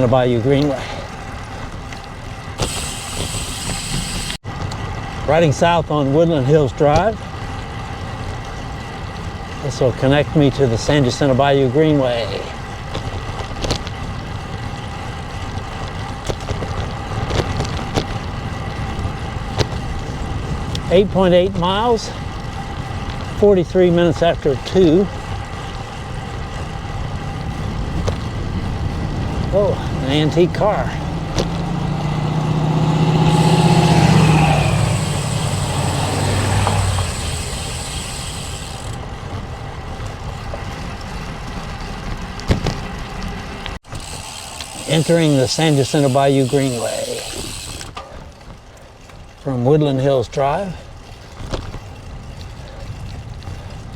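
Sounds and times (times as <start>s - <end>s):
road noise: 0.0s - 53.9s
wind buffeting microphone: 12.6s - 44.8s
car engine driving past: 31.0s - 38.1s.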